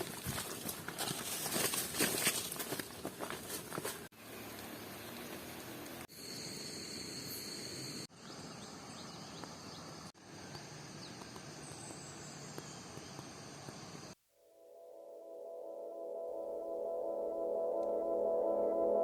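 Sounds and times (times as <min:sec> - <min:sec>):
crickets trilling: 0:04.4 - 0:14.2.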